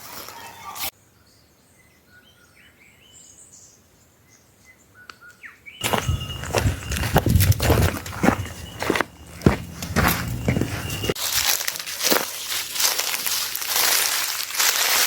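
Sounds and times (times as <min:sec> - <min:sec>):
faint bird chirps: 0:00.4 - 0:07.3
footsteps crunching on ground: 0:05.8 - 0:15.0.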